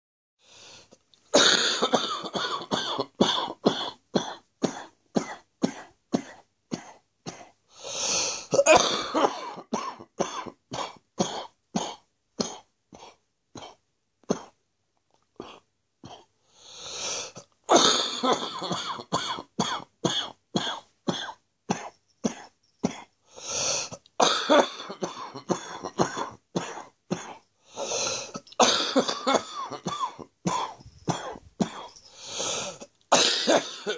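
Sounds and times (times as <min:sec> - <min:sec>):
person chesty coughing: 0:01.3 - 0:07.6, 0:08.4 - 0:14.6, 0:17.3 - 0:23.1, 0:23.9 - 0:33.9
drawn-in breaths: 0:07.7 - 0:08.5, 0:16.4 - 0:17.5, 0:23.2 - 0:24.1, 0:31.7 - 0:33.0.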